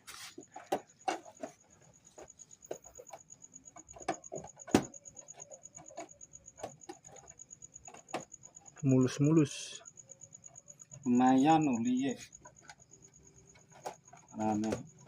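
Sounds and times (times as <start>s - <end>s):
clicks and knocks: 0.6s - 8.7s
insect trilling: 0.8s - 15.0s.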